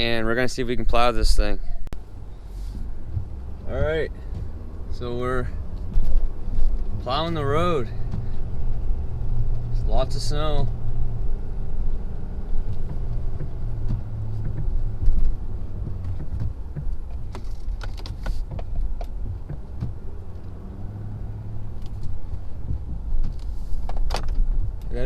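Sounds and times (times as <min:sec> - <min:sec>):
diesel engine running: 0:01.9 - 0:25.0
sharp knocks and clicks: 0:02.7 - 0:07.4, 0:12.6 - 0:20.7, 0:21.6 - 0:25.0.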